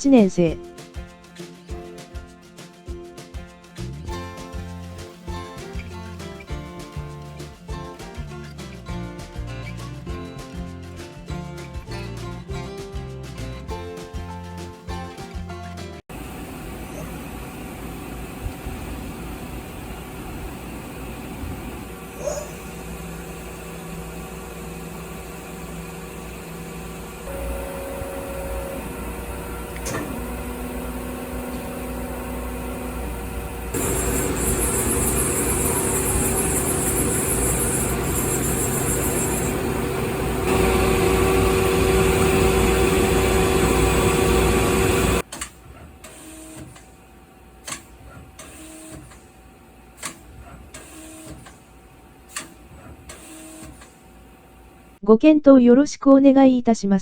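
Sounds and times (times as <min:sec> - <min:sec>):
lathe humming: 0:16.1 - 0:45.3.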